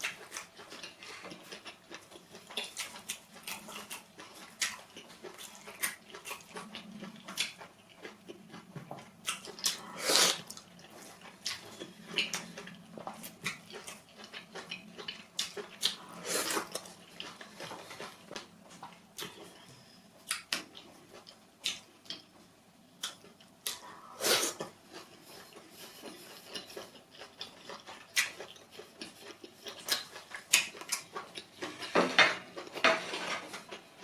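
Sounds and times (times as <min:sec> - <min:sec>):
mouth clicks and smacks: 0:21.6 - 0:22.3.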